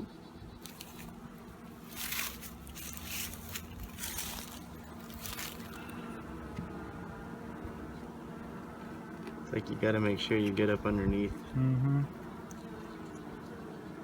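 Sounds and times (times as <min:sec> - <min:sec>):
honey bees humming: 0:00.0 - 0:14.0
hive frames scraping loose: 0:00.6 - 0:06.8.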